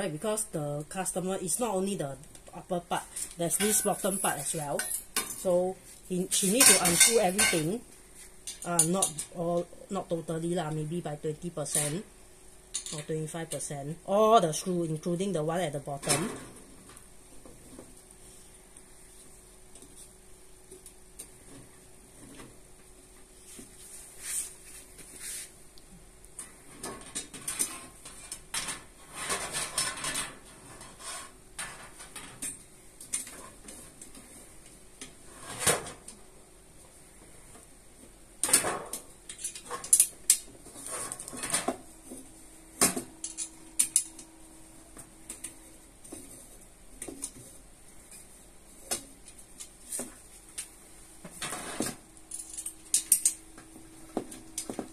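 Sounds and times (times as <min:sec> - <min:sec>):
metallic clinks and rattles: 0:52.3 - 0:53.4.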